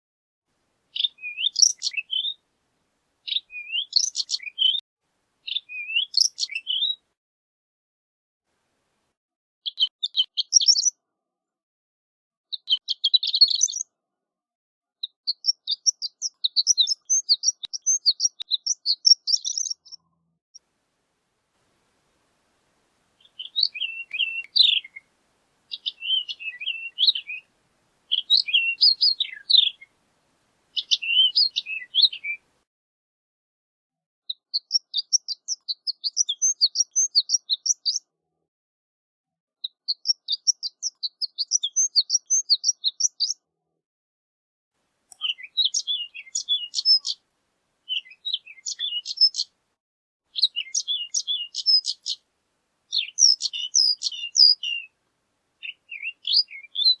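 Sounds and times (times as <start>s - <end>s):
lark singing: 0.9s - 2.4s, 3.2s - 4.8s, 5.4s - 7.0s, 12.5s - 13.9s, 15.0s - 20.1s, 23.2s - 30.0s, 30.7s - 32.5s, 34.3s - 38.0s, 39.9s - 43.4s, 45.1s - 47.2s, 47.9s - 49.5s, 50.4s - 52.3s, 52.9s - 55.0s, 55.6s - 57.0s.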